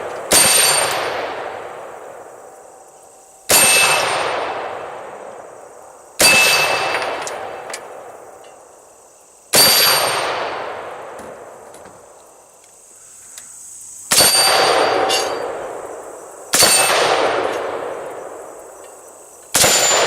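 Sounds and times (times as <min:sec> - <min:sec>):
rifle shots: 0:00.0 - 0:02.2, 0:03.5 - 0:05.1, 0:06.2 - 0:08.0, 0:09.5 - 0:11.5, 0:14.1 - 0:15.8, 0:16.5 - 0:18.1, 0:19.5 - 0:20.0
steel target ringing: 0:03.5 - 0:04.4, 0:06.2 - 0:07.2.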